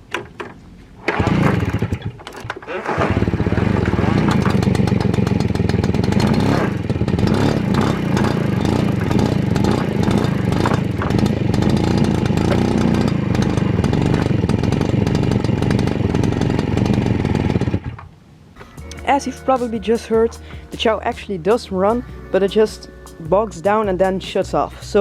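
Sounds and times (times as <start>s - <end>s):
moped engine running unevenly: 1.1s - 18.0s.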